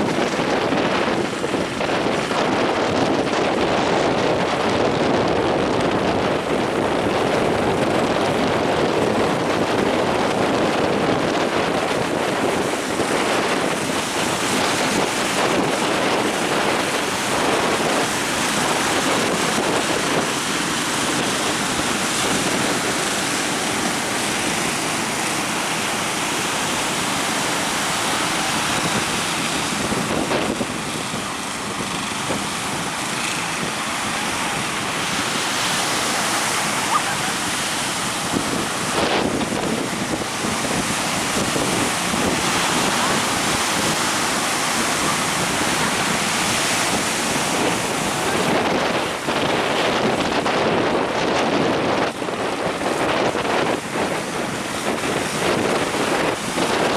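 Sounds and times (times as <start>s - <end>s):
sea waves breaking: 0.0s - 56.9s
wind buffeting microphone: 0.0s - 56.9s.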